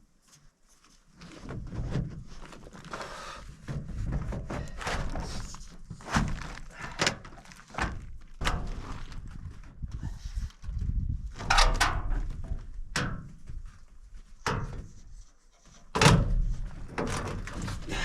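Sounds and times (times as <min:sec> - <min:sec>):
metal roofing panels thumping: 0:15.9 - 0:18.0.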